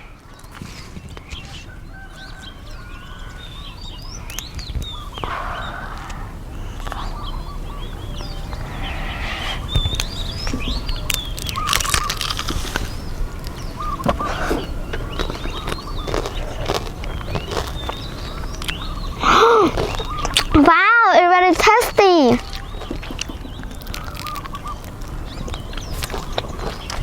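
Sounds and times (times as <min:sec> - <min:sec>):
birds chirping: 0:00.0 - 0:27.0
crunching bites of crispy food: 0:11.1 - 0:20.5, 0:22.5 - 0:27.0.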